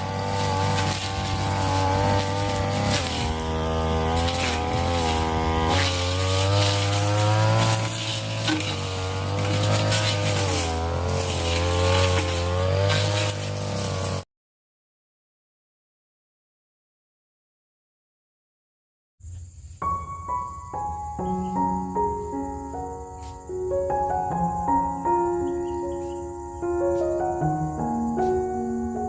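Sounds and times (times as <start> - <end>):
brush-cutter engine revving: 0.0 - 14.2.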